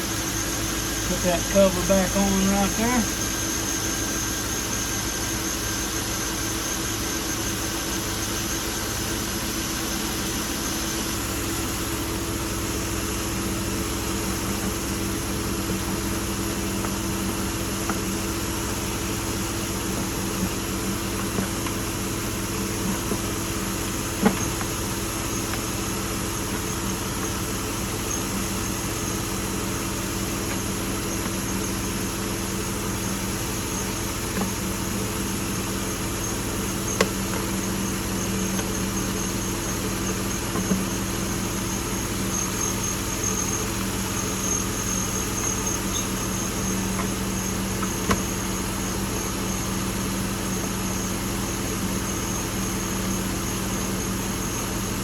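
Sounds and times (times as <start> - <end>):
car engine idling: 0.0 - 55.0.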